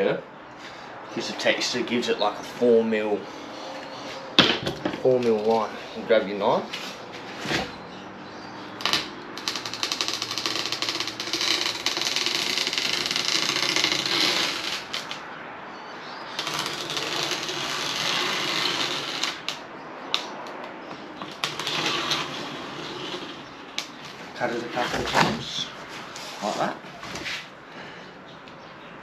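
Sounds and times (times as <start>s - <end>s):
knife scraping through styrofoam: 10.7s - 15.0s, 16.4s - 19.5s.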